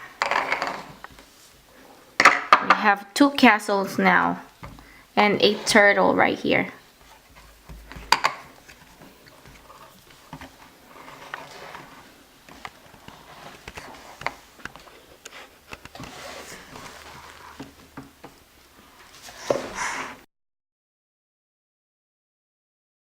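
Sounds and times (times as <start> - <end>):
sand scraping and rustling: 16.0 - 17.6.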